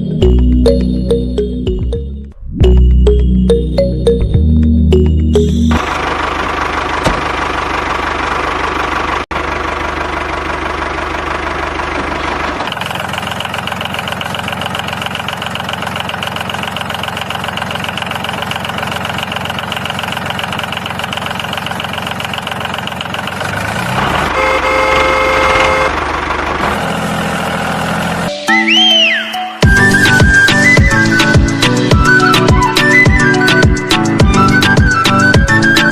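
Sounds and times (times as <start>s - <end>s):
small motor rattling: 10.2s - 24.0s.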